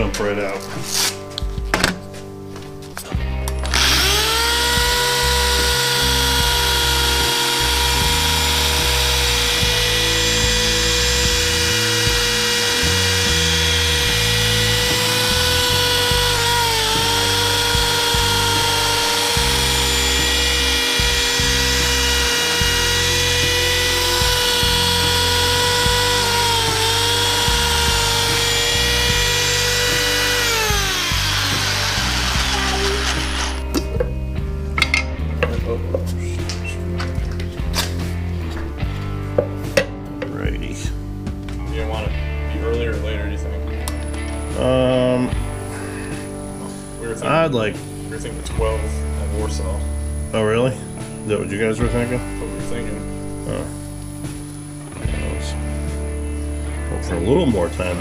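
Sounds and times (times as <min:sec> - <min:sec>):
background music: 0:00.0 - 0:58.0
wood lathe motor whining: 0:03.6 - 0:33.8.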